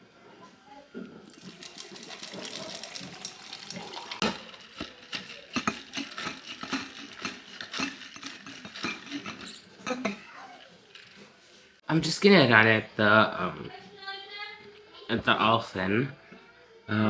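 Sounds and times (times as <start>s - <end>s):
clicking and rattling: 1.3s - 10.2s.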